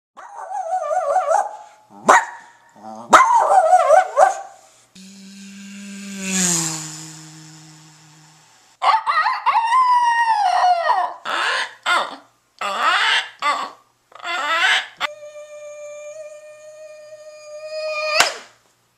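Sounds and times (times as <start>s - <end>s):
man humming and hissing: 5.0s - 8.7s, 15.1s - 18.2s.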